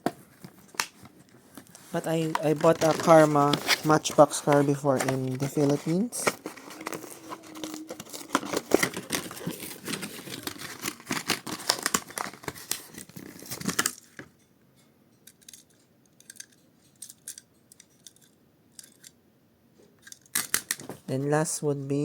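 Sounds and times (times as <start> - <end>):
packaging crinkling and tearing: 0.4 - 14.2.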